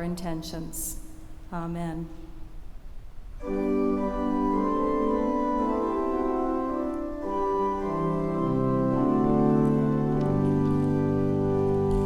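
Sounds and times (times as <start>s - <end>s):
organ playing slow chords: 3.4s - 12.0s.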